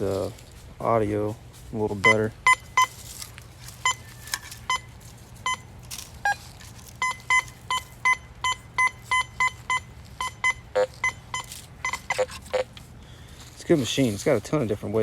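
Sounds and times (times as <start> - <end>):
metal detector high beeps: 2.0 - 3.0, 3.8 - 12.7
metal detector lower tone: 2.0 - 3.0, 3.8 - 12.8.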